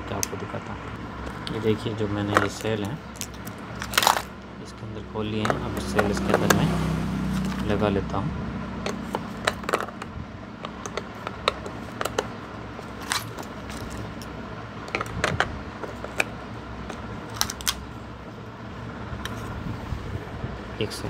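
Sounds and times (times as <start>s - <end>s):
handling plastic casing: 2.2s - 4.4s, 8.8s - 17.8s
batteries clicking into compartment: 2.3s - 4.3s, 8.8s - 12.3s.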